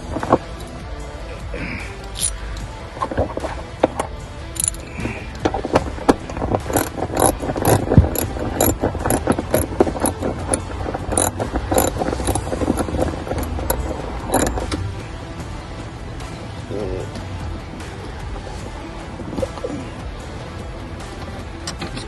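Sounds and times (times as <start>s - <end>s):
ratchet clicking: 0.0s - 0.8s, 2.0s - 14.8s
background music: 0.0s - 22.0s.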